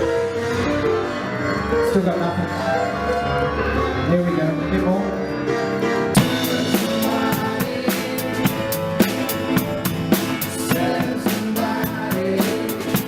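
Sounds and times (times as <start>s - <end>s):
band playing instrumental: 0.0s - 13.0s
drum kit beat: 6.2s - 13.0s.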